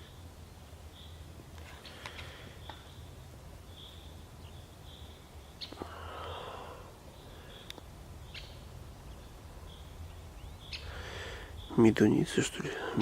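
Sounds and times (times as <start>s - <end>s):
bird short high calls: 8.3s - 11.8s.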